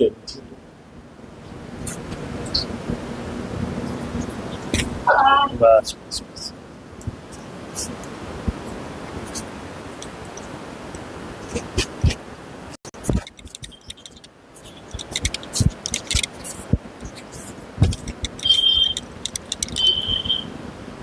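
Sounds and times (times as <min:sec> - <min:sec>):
high steady tone: 0:18.3 - 0:20.6.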